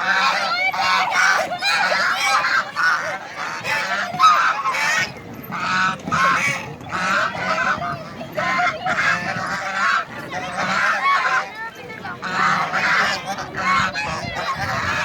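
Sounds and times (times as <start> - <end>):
ducks quacking: 0.0 - 15.0.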